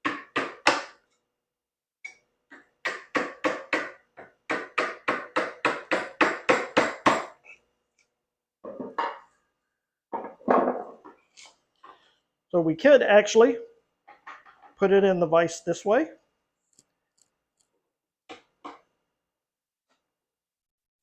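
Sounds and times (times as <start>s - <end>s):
mallet striking chisel: 2.1s - 7.4s.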